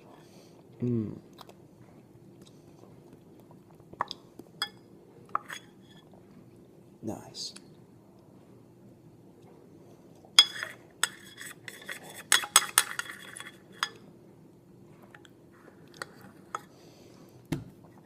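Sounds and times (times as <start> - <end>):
spoon clinking against bowl: 4.6 - 4.8, 10.4 - 14.0.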